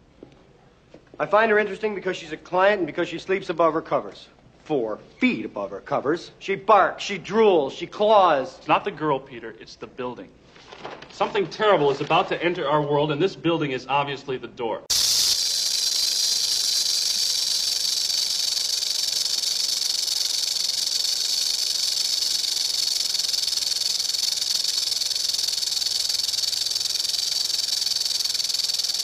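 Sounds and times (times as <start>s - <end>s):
high-pitched hiss: 14.9s - 29.0s.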